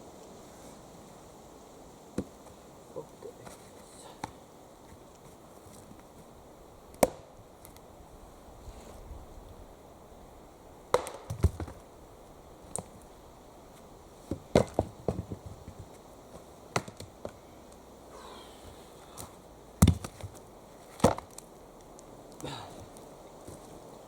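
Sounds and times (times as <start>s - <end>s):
axe chopping wood: 7.0s - 7.3s, 10.9s - 11.8s, 14.3s - 15.4s, 16.7s - 17.0s, 19.8s - 20.4s, 21.0s - 21.4s.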